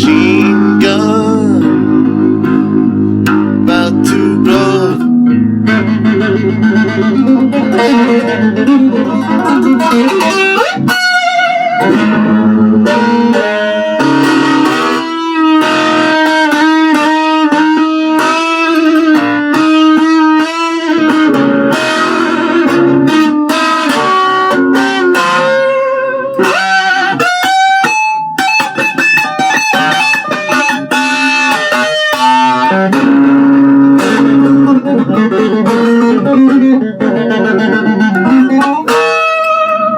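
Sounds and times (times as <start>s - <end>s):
low accompaniment: 0.0s - 27.5s
electric guitar lead: 0.0s - 39.9s.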